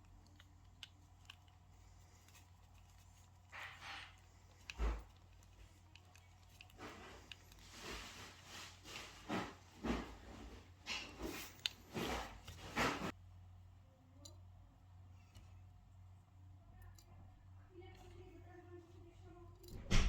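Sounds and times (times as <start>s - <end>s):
rubbing and scraping strokes: 0.3s - 13.2s.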